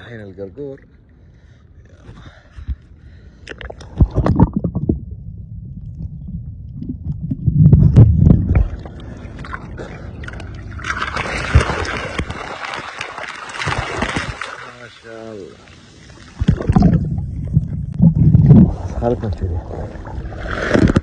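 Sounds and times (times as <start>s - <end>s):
low rumble: 2.3s - 12.2s, 16.4s - 21.0s
seawater sloshing and splashing: 8.4s - 21.0s.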